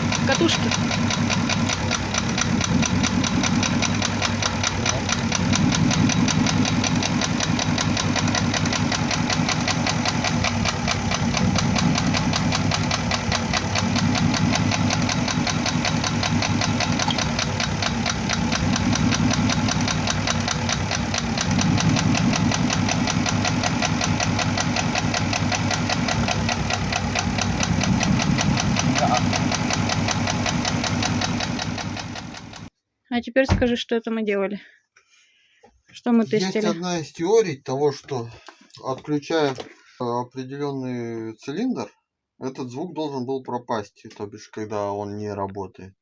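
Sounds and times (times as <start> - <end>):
car engine idling: 0.0 - 32.7
rapid engine knock: 0.0 - 32.7.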